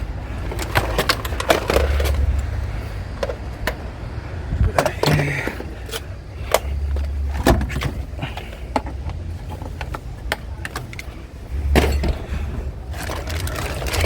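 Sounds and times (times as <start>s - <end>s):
scrap items knocking and clattering: 0.5s - 2.5s, 6.5s - 14.0s
low rumble: 10.9s - 14.0s.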